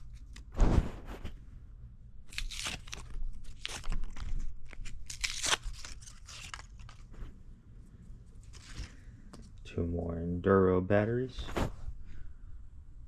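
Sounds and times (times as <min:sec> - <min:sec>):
packaging crinkling and rustling: 0:02.3 - 0:07.3.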